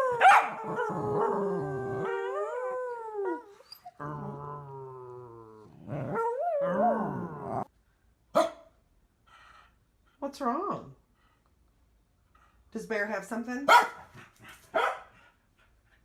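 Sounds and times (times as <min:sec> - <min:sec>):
dog howling: 0:00.0 - 0:07.7.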